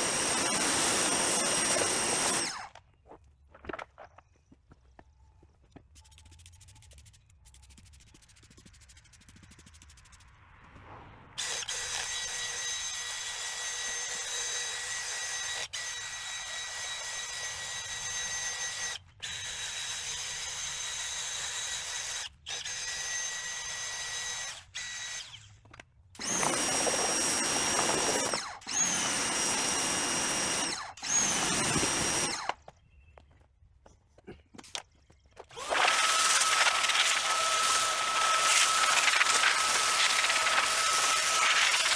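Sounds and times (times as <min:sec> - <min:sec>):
power tool motor running: 0:00.0 - 0:02.8, 0:26.2 - 0:32.7, 0:35.5 - 0:41.9.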